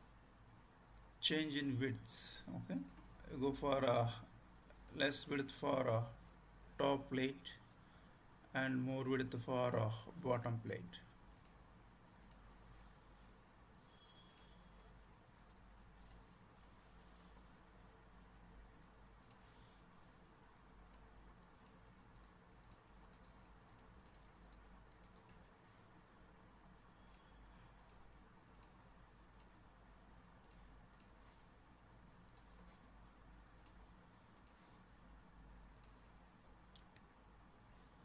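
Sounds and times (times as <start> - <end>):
low background hum: 0.0 - 38.0
computer mouse clicks: 11.3 - 11.6, 12.2 - 12.5, 14.1 - 14.6, 15.3 - 16.3, 19.1 - 19.6, 20.8 - 25.6, 27.0 - 29.6, 30.4 - 31.5, 32.2 - 32.8, 33.4 - 34.9, 35.6 - 37.1.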